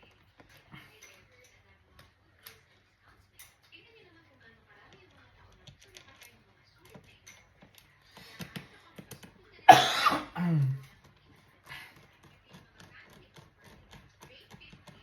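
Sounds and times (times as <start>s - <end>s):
faint small clicks and taps: 4.8s - 9.5s, 10.9s - 15.0s
person coughing: 9.7s - 10.8s.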